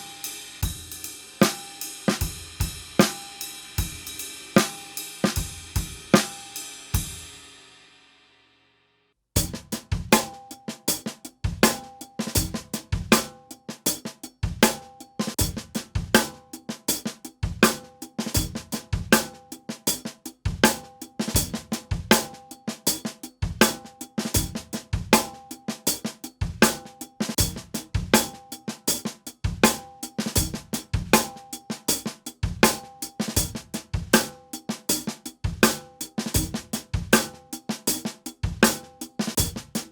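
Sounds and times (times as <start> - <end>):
cymbals ringing: 0.0 - 7.7
drum kit groove: 0.0 - 7.8, 9.4 - 39.9.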